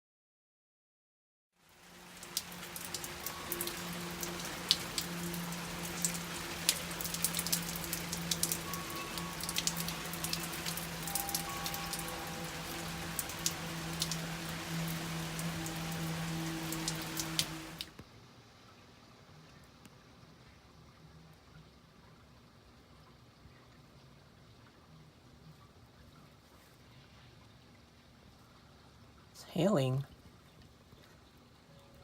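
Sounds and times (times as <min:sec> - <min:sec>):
rain drops tapping hard surface: 0:01.6 - 0:18.1.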